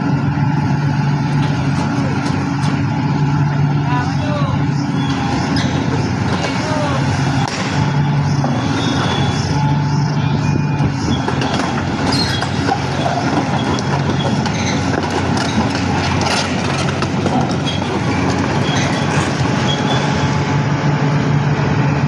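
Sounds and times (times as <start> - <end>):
diesel engine running: 0.0 - 22.0
steel tracks clattering: 1.3 - 3.0, 11.0 - 20.5
short high squeaks: 4.8 - 16.6, 17.5 - 20.4.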